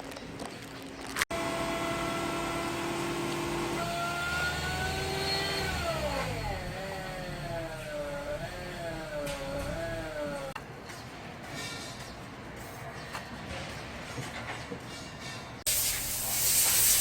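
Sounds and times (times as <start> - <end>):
air conditioning compressor whine: 1.3 - 10.6
car engine rumble: 1.4 - 10.6.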